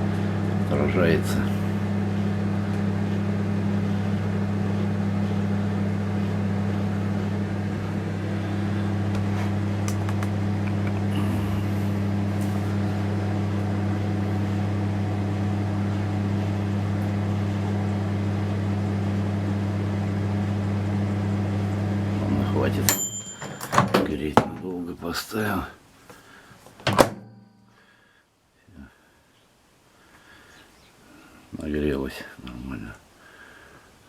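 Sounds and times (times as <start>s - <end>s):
microwave oven humming: 0.0s - 28.2s.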